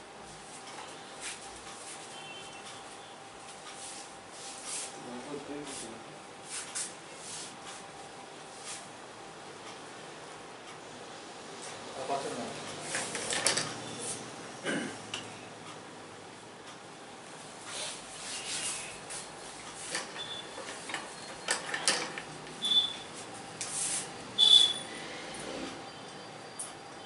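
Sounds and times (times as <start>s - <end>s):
hands rubbing through hair: 3.8s - 4.9s.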